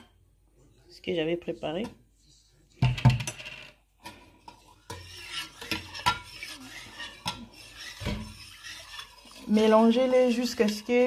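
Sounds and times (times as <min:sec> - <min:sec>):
spoon stirring in a container: 0:04.0 - 0:11.0.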